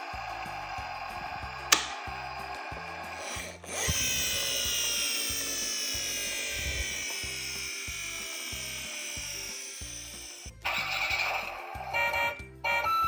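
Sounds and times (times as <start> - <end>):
toy car motor whirring: 0.0 - 12.4
sharp click: 1.7 - 2.1.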